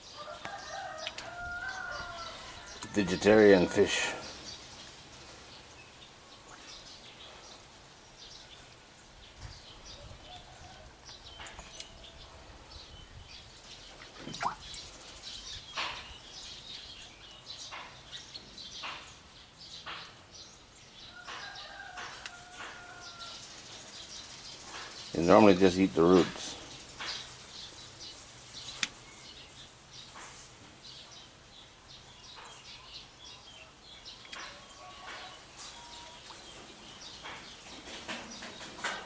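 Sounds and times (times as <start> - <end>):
birds chirping and calling: 0.1 - 5.4, 9.3 - 31.3.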